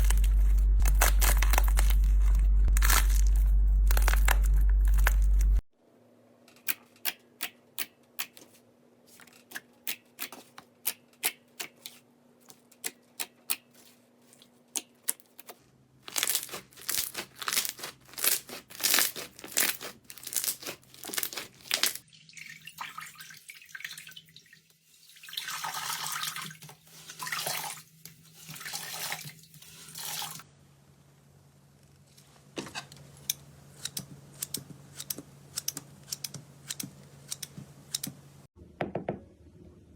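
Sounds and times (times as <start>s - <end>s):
crackling and wet squelching: 0.0s - 5.6s, 9.4s - 22.1s
slime squishing by hand: 0.0s - 5.6s, 13.5s - 22.0s.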